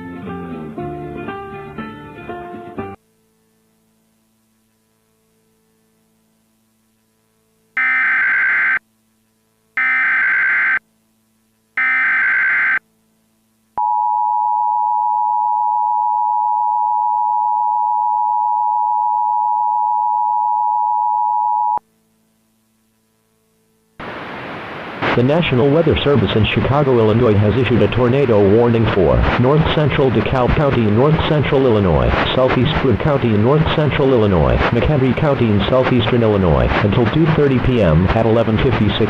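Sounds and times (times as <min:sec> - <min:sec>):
faint hum: 0:03.0 - 0:39.0
header data tone bursts: 0:07.8 - 0:08.8, 0:09.8 - 0:10.8, 0:11.8 - 0:12.8
two-tone attention signal: 0:11.8 - 0:12.8.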